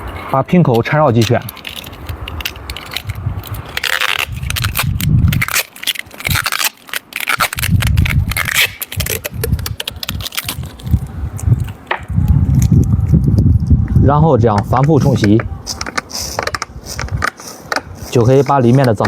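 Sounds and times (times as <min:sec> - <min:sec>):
plastic bottle crinkling: 0:01.1 - 0:11.8, 0:15.0 - 0:19.0.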